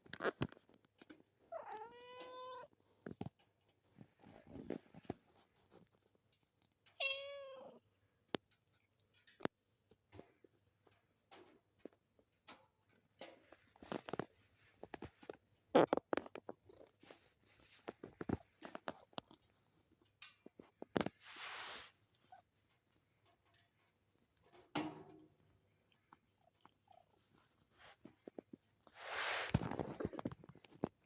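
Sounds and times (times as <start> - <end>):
soft clicks and rustles: 0.0 - 7.0, 8.1 - 31.0
breathy hiss: 21.2 - 22.0, 28.9 - 29.6.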